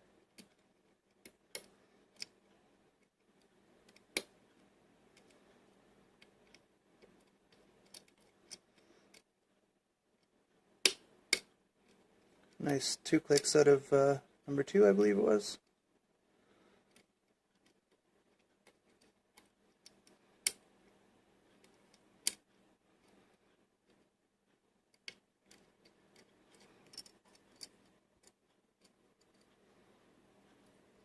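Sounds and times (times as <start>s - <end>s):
lock pick clicking and scraping: 6.2s - 9.3s, 24.9s - 29.5s.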